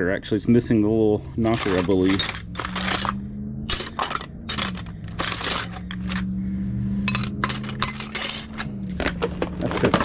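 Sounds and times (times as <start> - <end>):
metal handles clinking in box: 1.4 - 6.3, 7.1 - 10.0.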